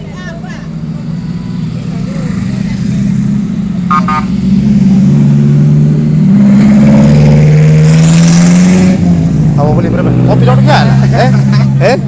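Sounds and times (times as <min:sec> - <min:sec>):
engine speeding up: 0:00.0 - 0:12.0
double horn beep: 0:03.9 - 0:04.4.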